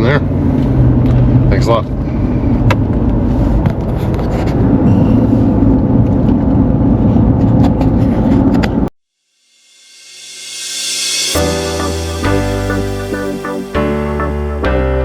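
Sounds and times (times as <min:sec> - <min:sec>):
vehicle rumble from inside cabin: 0:00.0 - 0:08.9.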